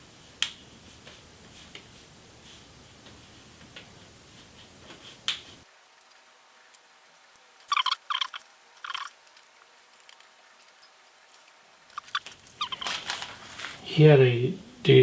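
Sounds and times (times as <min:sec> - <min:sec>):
plastic clicks and crackles: 0:09.2 - 0:13.4.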